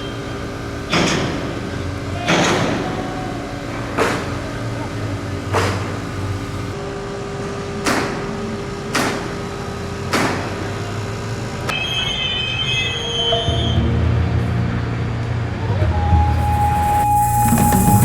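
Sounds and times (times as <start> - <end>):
high wheel squeal: 11.7 - 13.9, 15.6 - 18.0
train rumble with held tone: 13.0 - 18.0.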